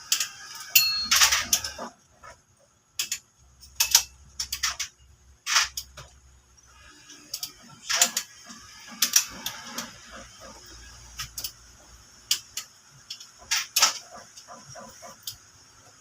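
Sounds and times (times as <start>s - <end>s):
hand tools clinking on metal: 0.7s - 1.8s.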